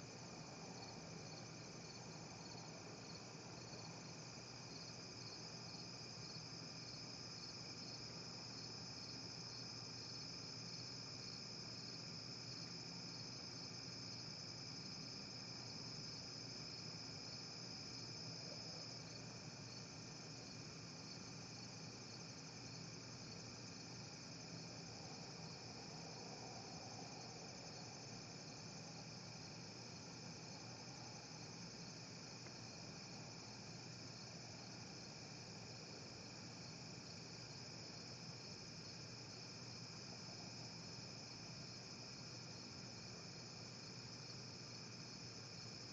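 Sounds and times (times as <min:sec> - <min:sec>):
crickets trilling: 0:20.4 - 0:42.7.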